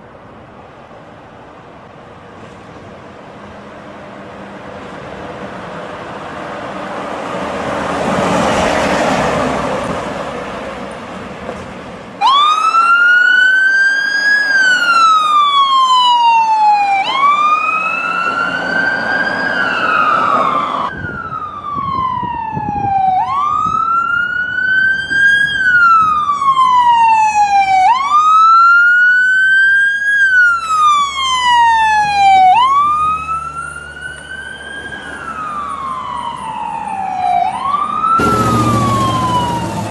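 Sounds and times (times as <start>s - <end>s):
ambulance siren wailing: 12.2s - 39.9s
rushing noise: 38.2s - 39.9s.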